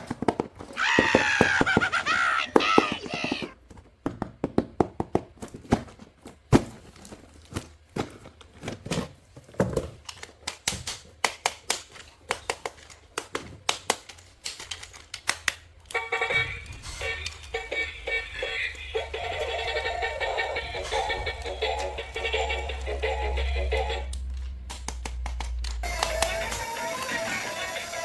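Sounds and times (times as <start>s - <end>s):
plastic toy parts clicking: 10.0s - 16.0s, 24.0s - 26.6s.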